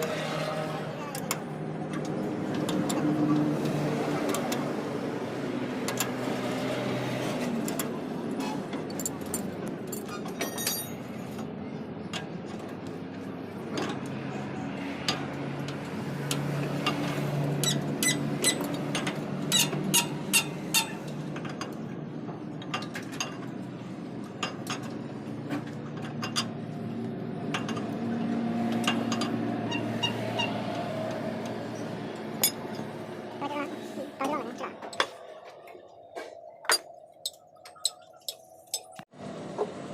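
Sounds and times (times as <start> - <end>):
tools clinking on metal: 8.9 - 11.0, 32.4 - 32.8, 36.6 - 39.0.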